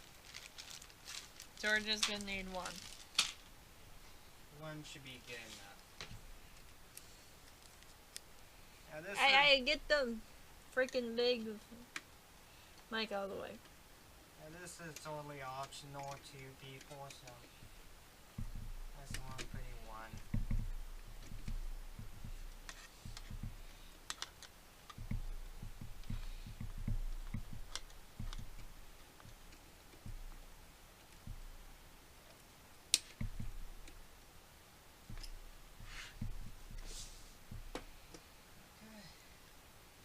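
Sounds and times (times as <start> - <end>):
screwdriver clicks and knocks: 24.9 - 30.4.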